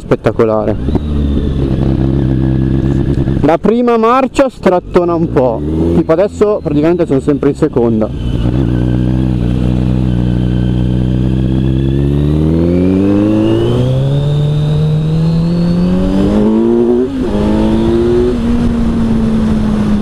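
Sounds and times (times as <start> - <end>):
motorcycle engine accelerating: 0.6 - 20.0.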